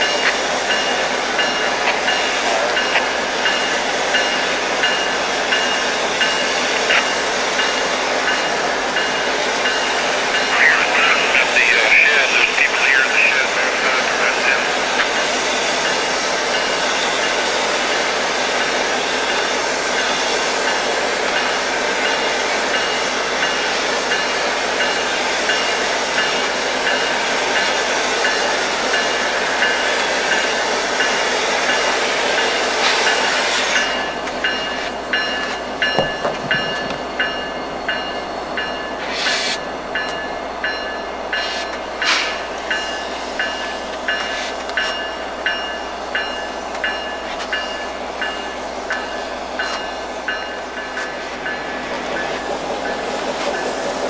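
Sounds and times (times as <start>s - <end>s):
train wheels clicking over rail joints: 0.0s - 10.4s, 14.9s - 54.0s
loud steady rushing noise: 0.0s - 21.1s.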